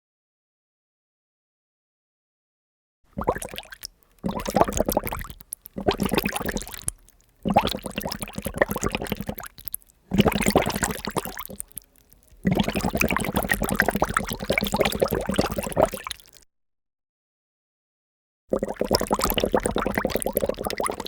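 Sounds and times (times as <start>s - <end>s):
water bubbling and gurgling: 3.1s - 16.4s, 18.5s - 21.0s.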